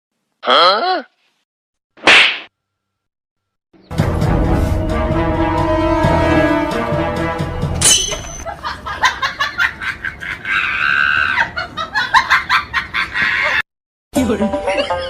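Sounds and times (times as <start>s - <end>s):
comic laughter sound effect: 8.4s - 13.6s, 14.6s - 15.0s.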